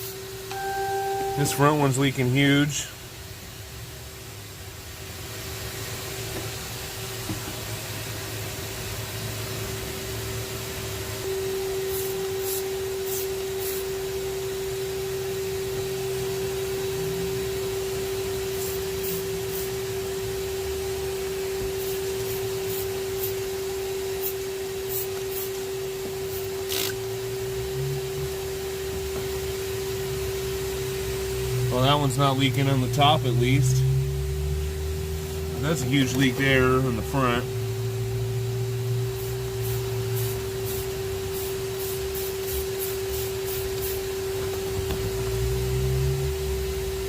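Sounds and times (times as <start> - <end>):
low hum: 0.5 - 2.7.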